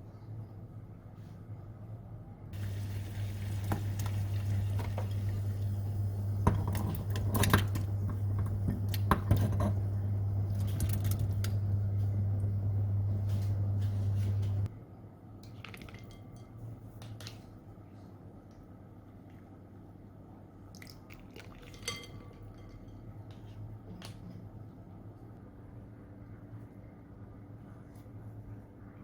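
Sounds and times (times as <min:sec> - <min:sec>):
kitchen appliance humming: 0:02.6 - 0:14.7.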